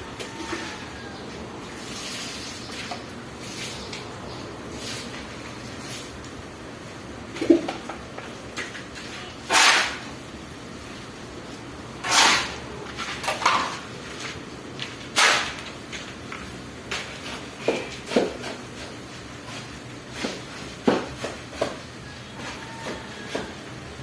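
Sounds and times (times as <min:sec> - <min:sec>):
trowel scraping concrete blocks: 0:08.8 - 0:10.2, 0:12.0 - 0:14.4, 0:15.0 - 0:15.8.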